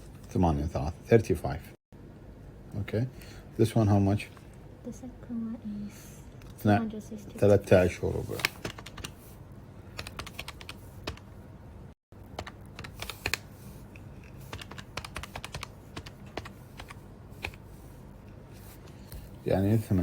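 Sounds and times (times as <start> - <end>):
calculator keys clicking: 8.4 - 9.2, 10.0 - 11.3, 12.2 - 17.6.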